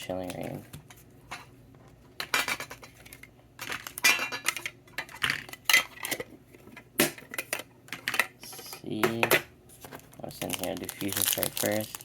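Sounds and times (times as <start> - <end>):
metal tin clinking and rattling: 2.2 - 6.3.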